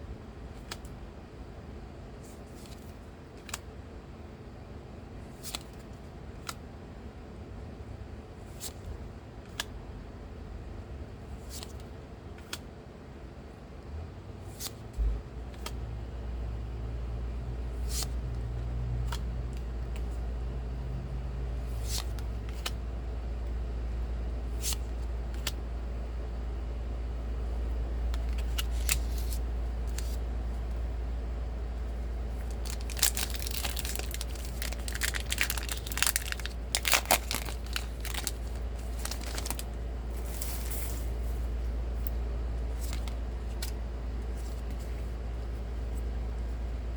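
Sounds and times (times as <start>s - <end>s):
foil wrapper crinkling: 32.4s - 41.0s.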